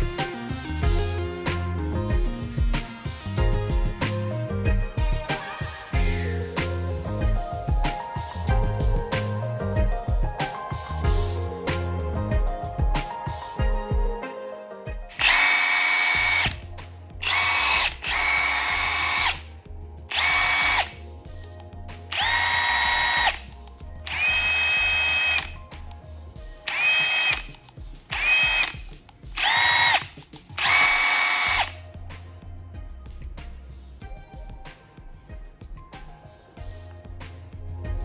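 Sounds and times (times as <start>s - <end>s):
cordless impact wrench whining: 15.2s - 16.6s, 17.3s - 19.4s, 20.1s - 20.9s, 28.1s - 28.8s, 29.4s - 31.7s.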